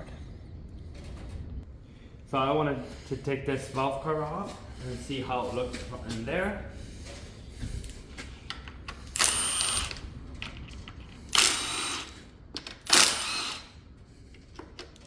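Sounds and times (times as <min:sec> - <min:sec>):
power tool whirring: 0:08.9 - 0:13.9.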